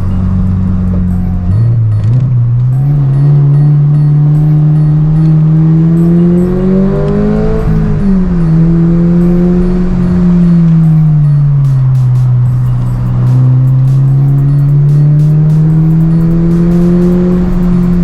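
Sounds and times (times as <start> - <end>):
car engine revving from cabin: 0.0 - 18.0.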